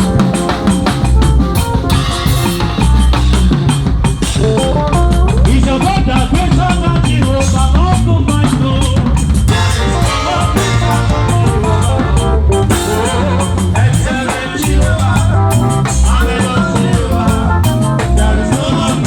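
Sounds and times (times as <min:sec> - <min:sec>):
drum kit fills: 0:00.0 - 0:19.0
steady bass line: 0:00.0 - 0:19.0
melodic music: 0:09.5 - 0:14.0.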